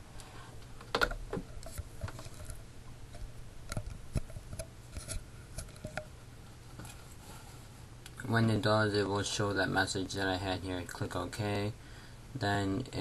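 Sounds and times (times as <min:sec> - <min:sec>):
faint low hum: 0:00.0 - 0:13.0.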